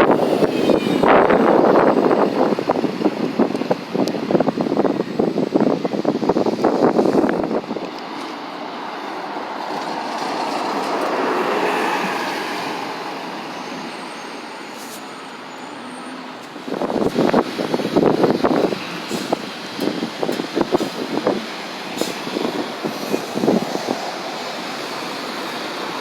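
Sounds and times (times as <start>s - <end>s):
wind buffeting microphone: 0.0s - 13.5s, 16.5s - 26.0s
bus driving past: 0.0s - 26.0s.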